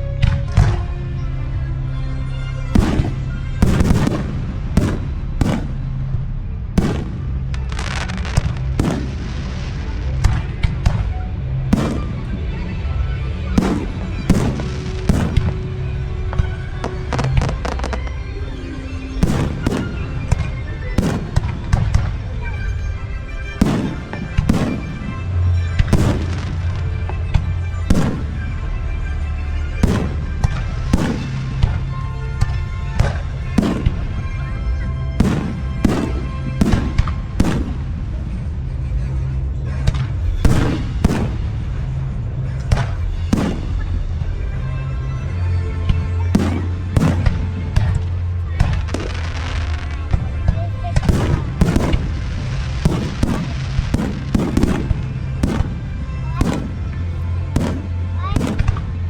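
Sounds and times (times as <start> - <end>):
music with steady bass: 0.0 - 59.0
firework crackling: 2.8 - 6.1, 6.8 - 28.7, 29.8 - 31.9, 32.6 - 34.4, 35.2 - 38.4, 40.2 - 42.1, 42.9 - 44.2, 46.3 - 59.0
firework shells bursting: 13.6 - 15.6, 19.2 - 22.0, 23.6 - 25.1, 29.8 - 31.7, 51.2 - 56.9.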